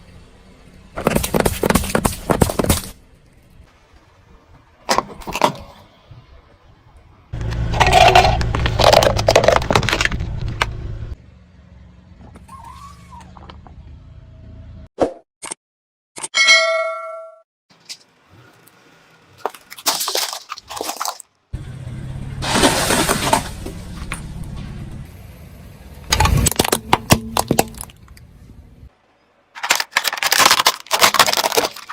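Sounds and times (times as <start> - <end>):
low engine hum: 7.0 - 14.9, 21.5 - 28.9
car tyre crushing brittle objects: 7.4 - 11.1, 19.3 - 21.5, 22.4 - 24.3, 26.0 - 28.3, 29.5 - 31.9
crackling and snapping: 29.6 - 31.9.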